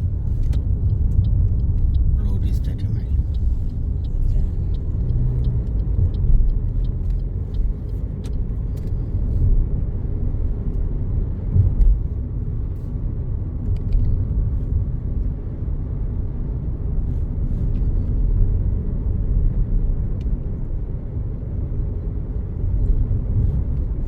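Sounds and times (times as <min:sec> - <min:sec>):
car engine and tyre rumble: 0:00.0 - 0:24.0
faint ticks: 0:03.2 - 0:09.4.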